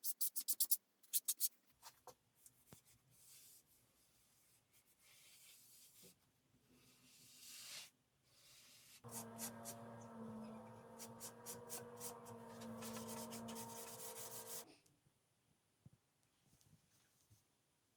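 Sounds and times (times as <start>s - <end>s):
scratchy strokes: 9.1s - 14.6s
steady hum: 9.1s - 14.7s.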